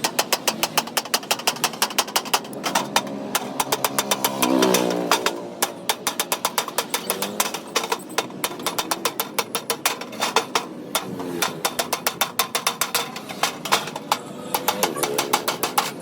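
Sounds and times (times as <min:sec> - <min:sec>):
rapid sharp tapping: 0:00.0 - 0:16.0.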